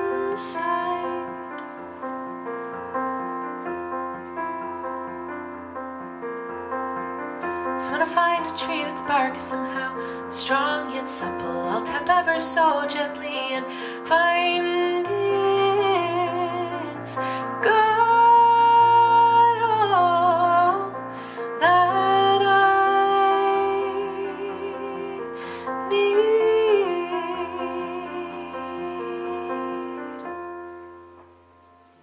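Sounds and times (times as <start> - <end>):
woman singing wordless notes: 0.0 - 2.0, 7.8 - 30.9
sustained keyboard chords: 0.0 - 32.0.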